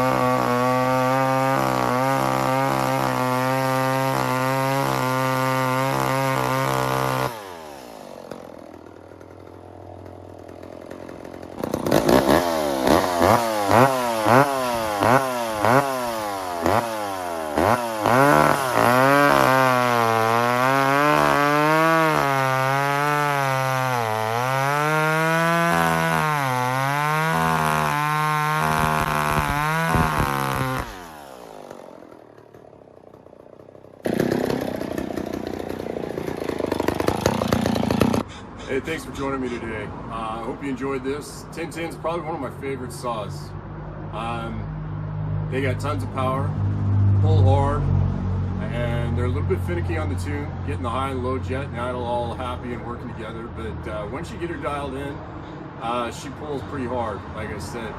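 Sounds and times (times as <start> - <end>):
chainsaw revving and idling: 0.0 - 38.4, 45.5 - 46.5, 48.6 - 55.2.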